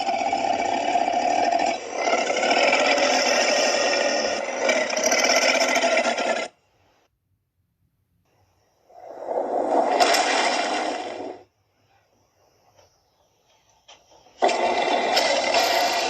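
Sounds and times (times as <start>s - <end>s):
dinosaur roar: 0.0s - 6.6s, 8.9s - 11.5s, 14.4s - 16.0s.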